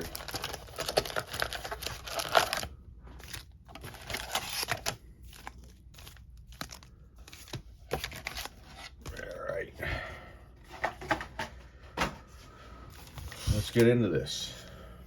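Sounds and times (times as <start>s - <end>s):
card packs rustling and crinkling: 0.0s - 9.6s, 10.6s - 12.2s.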